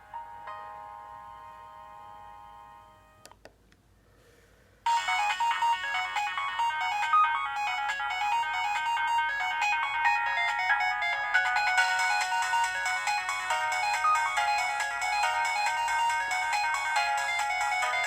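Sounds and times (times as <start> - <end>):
mobile phone ringtone: 4.9 - 18.0.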